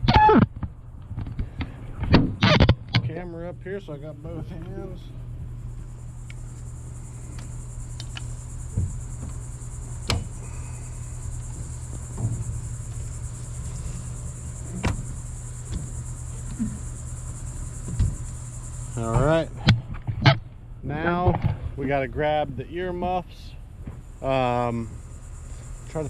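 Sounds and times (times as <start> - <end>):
insect chirring: 0.0 - 26.0
low steady hum: 0.0 - 26.0
knocks and clicks of outboard motor: 5.8 - 21.8, 23.0 - 26.0.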